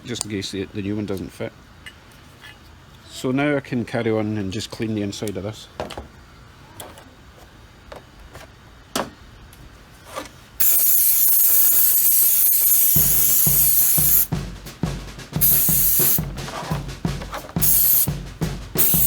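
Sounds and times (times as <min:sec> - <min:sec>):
aerosol spray hissing: 0:10.6 - 0:14.3, 0:15.4 - 0:16.3, 0:17.4 - 0:18.1, 0:18.8 - 0:19.0
drum kit music beat: 0:10.6 - 0:19.0.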